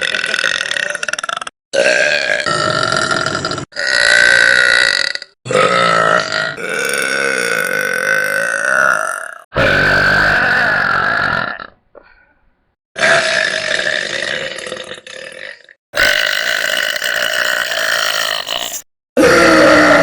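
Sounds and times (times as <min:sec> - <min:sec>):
women belching: 0:00.0 - 0:12.1.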